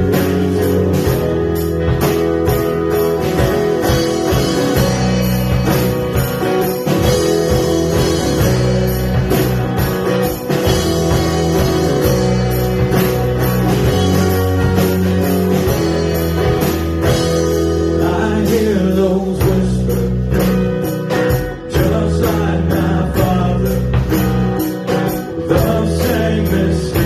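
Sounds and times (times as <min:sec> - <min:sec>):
bass guitar: 0:00.0 - 0:27.0
drums: 0:00.0 - 0:27.0
electric guitars: 0:00.0 - 0:27.0
person singing: 0:17.9 - 0:20.5, 0:21.6 - 0:24.1, 0:25.3 - 0:27.0.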